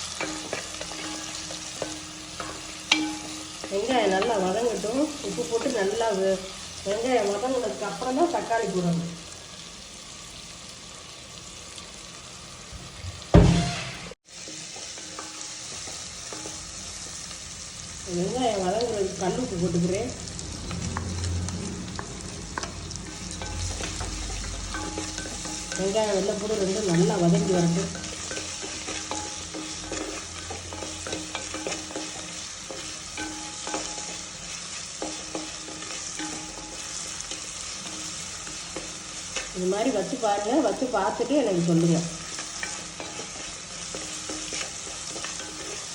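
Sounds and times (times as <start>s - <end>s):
spoon knocking on pan: 0.0s - 4.8s, 13.1s - 16.7s, 22.5s - 37.1s
onions sizzling in hot oil: 0.0s - 45.9s.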